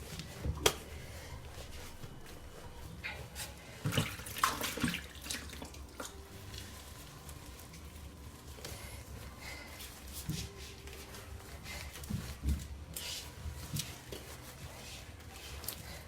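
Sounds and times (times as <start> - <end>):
wet squelching of mashed food: 0.0 - 10.6.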